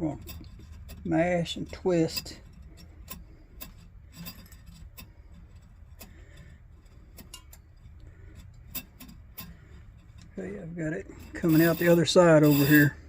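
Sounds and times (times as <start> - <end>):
small metallic clicks: 0.0 - 12.9.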